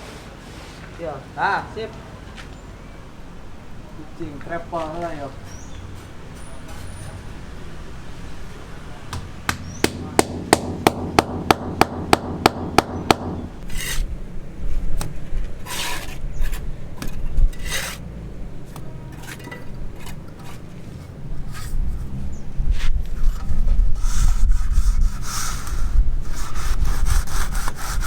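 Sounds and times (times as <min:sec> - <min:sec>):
sharp hand tool knocks: 0:09.1 - 0:13.5
scraping: 0:13.0 - 0:28.0.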